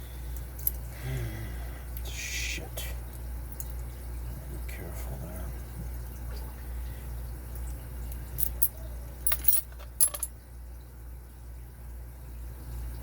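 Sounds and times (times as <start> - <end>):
metal lock parts clinking: 8.4 - 10.3.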